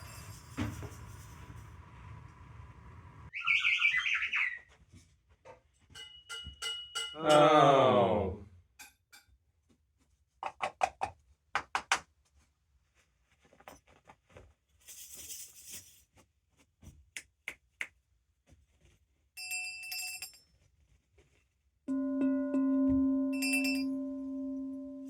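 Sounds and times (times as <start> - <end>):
high metallic ringing: 21.9 - 25.0.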